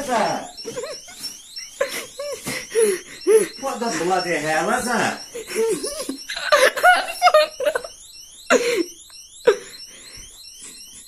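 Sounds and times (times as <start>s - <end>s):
electronic alarm chirps: 0.0s - 11.0s
person laughing: 0.6s - 4.3s, 5.2s - 9.8s.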